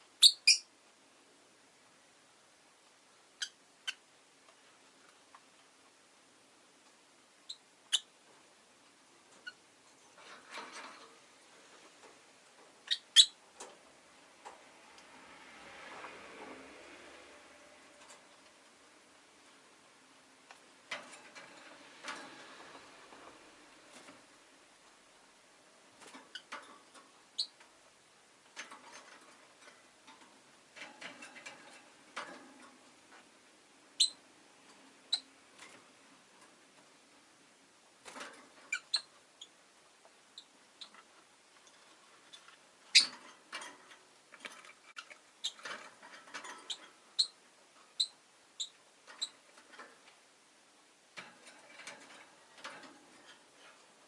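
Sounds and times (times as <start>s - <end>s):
bird chirping: 0.2s - 0.7s, 12.8s - 13.4s, 34.0s - 34.2s, 35.1s - 35.3s, 38.7s - 39.5s, 45.0s - 45.7s, 46.6s - 47.4s, 48.0s - 49.4s.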